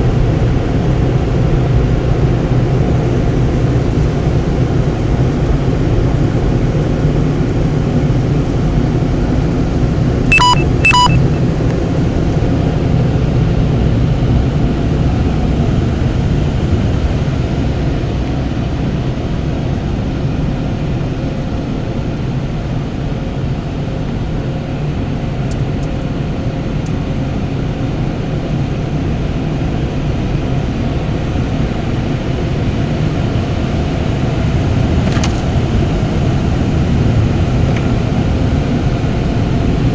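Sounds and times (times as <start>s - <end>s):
short electronic beeps: 10.3s - 11.4s.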